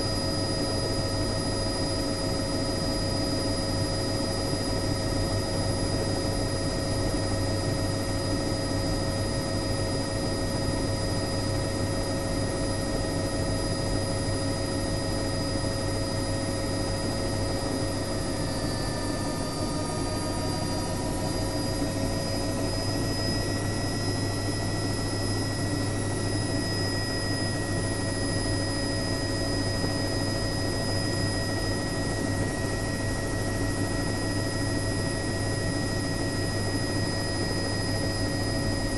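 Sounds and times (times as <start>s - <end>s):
helicopter rotor drone: 0.0s - 38.9s
high turbine whine: 0.0s - 38.9s.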